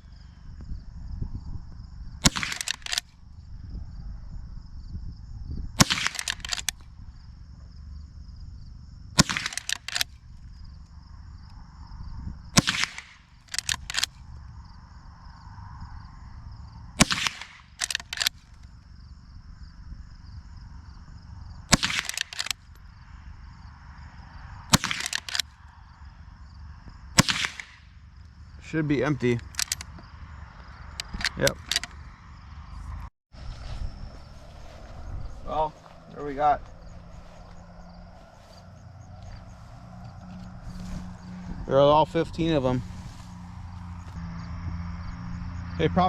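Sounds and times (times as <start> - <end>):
rifle lever clacking: 2.2 - 3.1, 5.8 - 6.8, 9.2 - 10.2, 12.6 - 14.2, 17.0 - 18.6, 21.7 - 22.6, 24.7 - 25.5, 29.4 - 29.9, 31.0 - 32.0
rifle shots: 2.2 - 3.1, 5.8 - 6.8, 9.2 - 10.2, 12.6 - 14.2, 17.0 - 18.4, 21.7 - 22.6, 24.7 - 25.5, 27.2 - 27.9.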